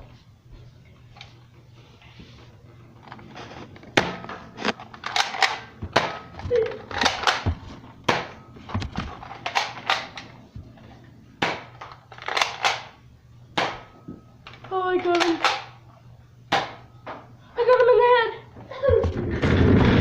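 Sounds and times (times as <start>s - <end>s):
foam darts hitting: 11.4s - 11.7s, 13.6s - 13.9s.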